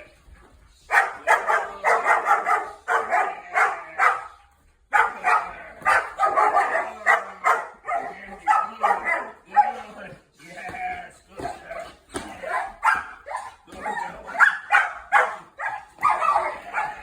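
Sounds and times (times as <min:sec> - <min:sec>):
puppy barking: 0:00.9 - 0:09.9, 0:12.4 - 0:17.0.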